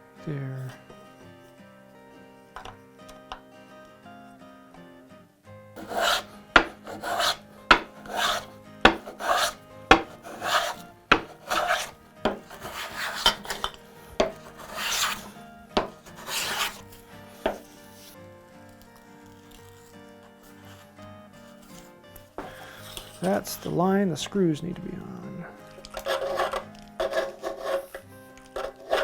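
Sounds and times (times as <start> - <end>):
faint background music: 0.0 - 29.0
rasp filing wood: 5.8 - 18.2, 20.5 - 23.8, 25.9 - 29.0
sharp knocks: 5.9 - 8.1, 8.9 - 10.2, 11.1 - 12.5.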